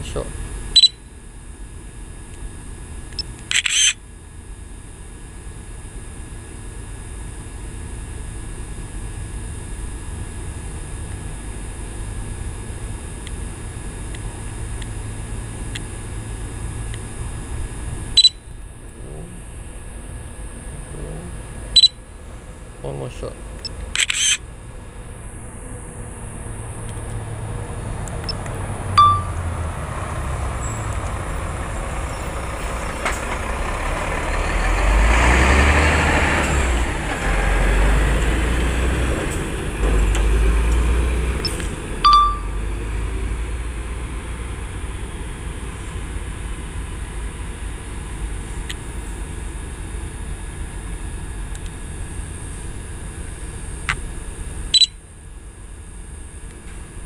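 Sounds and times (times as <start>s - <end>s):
short high beeps: 0.8s - 1.0s, 3.5s - 4.0s, 18.2s - 18.5s, 21.8s - 22.0s, 29.0s - 29.4s, 42.0s - 42.6s, 54.8s - 55.0s
large vehicle passing: 25.6s - 44.0s.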